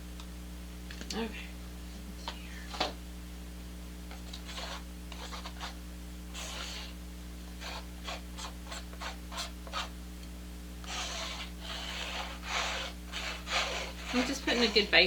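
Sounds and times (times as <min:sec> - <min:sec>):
steady low hum: 0:00.0 - 0:15.0
paint brush scraping on canvas: 0:04.1 - 0:07.0, 0:07.6 - 0:09.9, 0:10.8 - 0:15.0.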